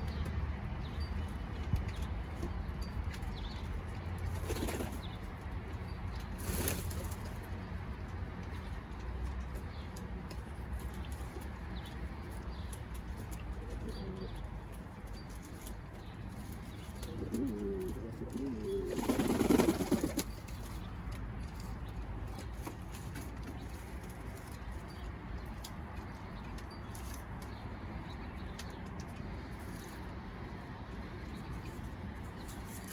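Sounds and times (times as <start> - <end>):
pigeon cooing: 17.0 - 19.4
rapid wing flapping: 19.0 - 20.3.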